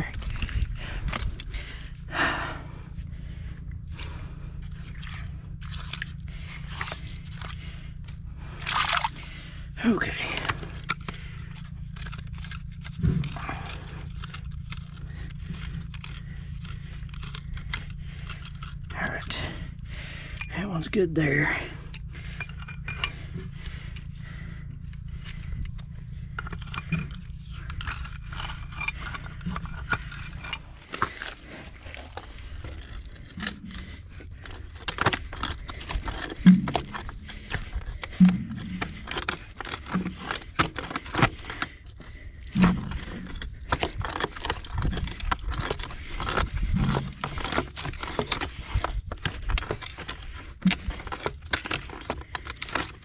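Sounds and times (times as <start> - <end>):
low steady hum: 0.0 - 53.0
scraping: 0.0 - 53.0
pipe wrenches clicking and knocking: 21.9 - 24.2, 24.8 - 53.0.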